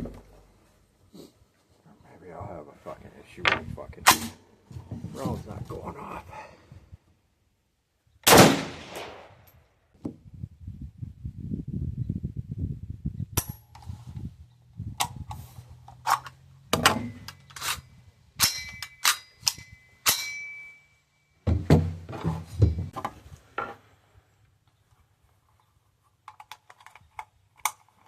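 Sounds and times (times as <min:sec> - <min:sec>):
rifle action clicks and clangs: 0:15.0 - 0:20.8, 0:25.5 - 0:28.0.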